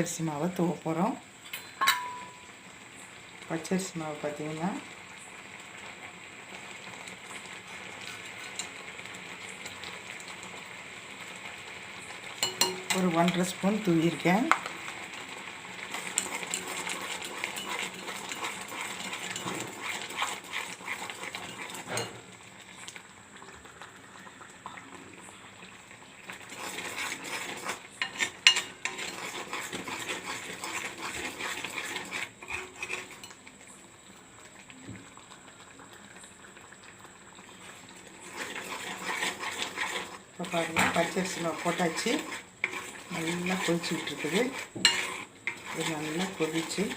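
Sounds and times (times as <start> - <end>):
syrup bubbling: 1.1 - 46.9
spoon clinking against pan: 1.5 - 2.4, 12.4 - 13.0, 28.0 - 29.4
spoon scraping a pan: 1.5 - 2.4, 7.7 - 8.8, 12.4 - 14.7, 15.9 - 22.3, 26.3 - 33.4, 38.2 - 46.9.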